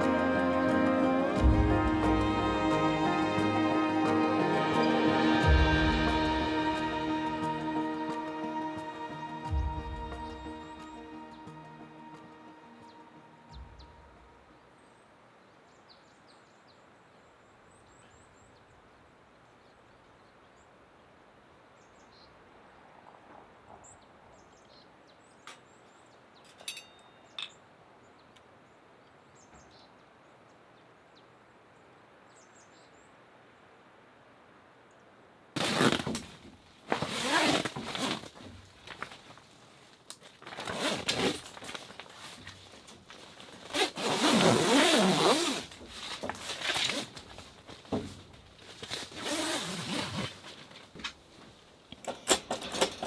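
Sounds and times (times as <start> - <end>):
faint birds chirping: 9.5 - 34.1
loud rustling bursts: 35.6 - 39.7.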